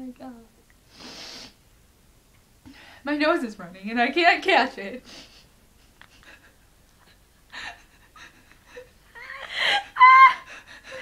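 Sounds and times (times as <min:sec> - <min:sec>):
girl sniffing and gasping: 0:00.9 - 0:01.6
girl squealing: 0:09.2 - 0:10.6.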